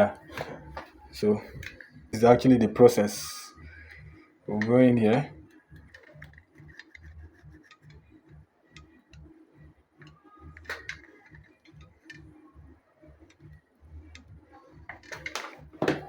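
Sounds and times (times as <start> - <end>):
faint low pulsing: 0.0 - 10.6
clicks and taps of handled tools: 14.9 - 16.0.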